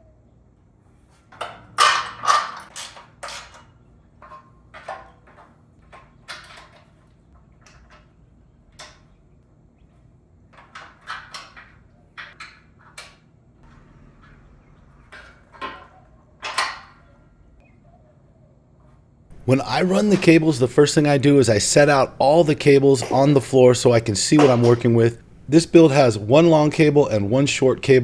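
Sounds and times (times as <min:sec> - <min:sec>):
metal tools knocking and clinking: 0:21.9 - 0:25.7.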